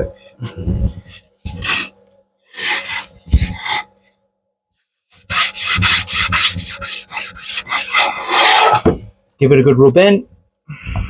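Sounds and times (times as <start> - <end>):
cloth rubbing wooden surface: 5.2 - 9.0.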